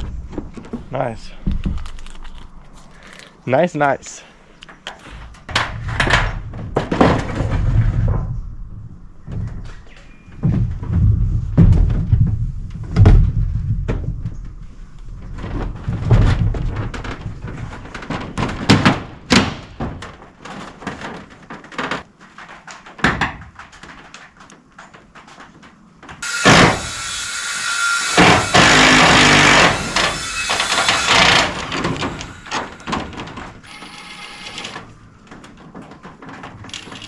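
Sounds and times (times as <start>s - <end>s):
knocks and thuds on a roof: 5.2s - 14.6s, 15.2s - 27.0s, 28.2s - 33.6s
power tool whirring: 26.2s - 32.6s.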